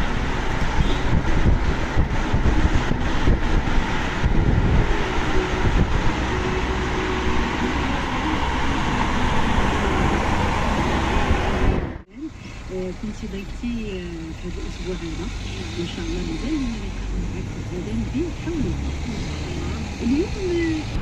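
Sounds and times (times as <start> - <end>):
low drone: 0.0 - 21.0
moving vehicle road noise: 0.0 - 21.0.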